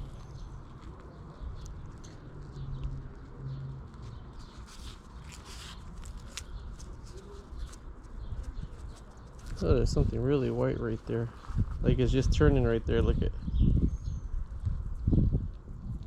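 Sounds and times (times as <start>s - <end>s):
birds calling: 0.0s - 14.4s.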